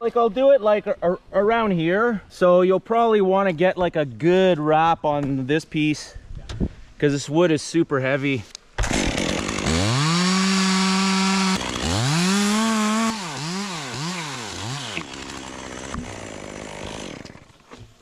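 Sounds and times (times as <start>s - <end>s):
chainsaw revving: 8.8s - 17.7s.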